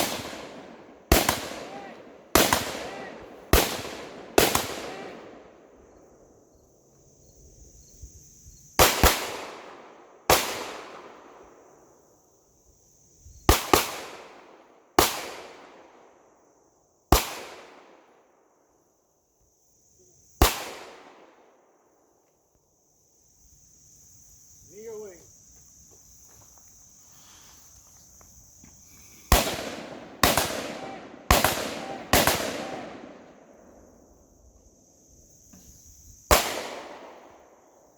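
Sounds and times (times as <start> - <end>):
gunshots with echo: 0.0 - 5.6, 29.3 - 33.4, 36.3 - 37.4
insects chirring: 0.0 - 37.9.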